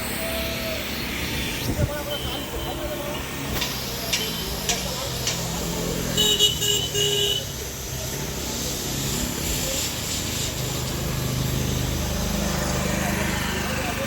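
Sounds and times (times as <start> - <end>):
vehicle horn honks: 6.2 - 7.5
engine running: 7.5 - 14.0.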